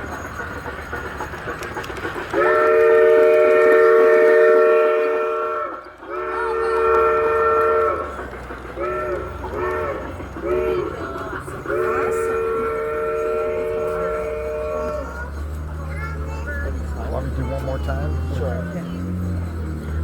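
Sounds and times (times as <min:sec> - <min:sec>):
train running rumble: 0:00.0 - 0:20.0
steam train chime whistle: 0:02.3 - 0:15.4.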